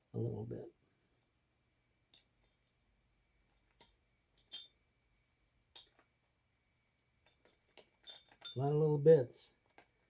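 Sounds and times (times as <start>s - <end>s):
metal scrap pieces clinking: 3.8s - 4.8s, 8.0s - 8.6s.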